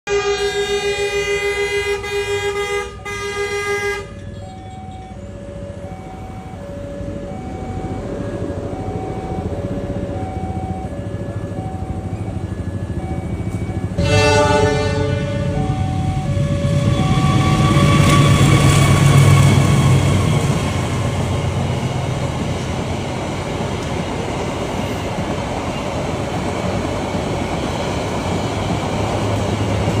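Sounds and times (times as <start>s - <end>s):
multi-tone vehicle horn: 0.1s - 5.3s, 13.9s - 19.8s
large vehicle passing rumble: 4.1s - 25.3s.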